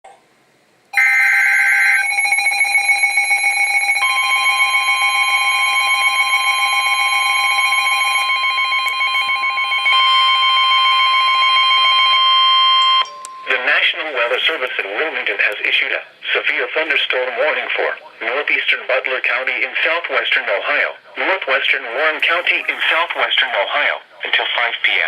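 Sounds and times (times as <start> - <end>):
electronic alarm tones with pulsing beep: 1.0 - 13.6
steady weather radio warning tone: 6.3 - 25.0.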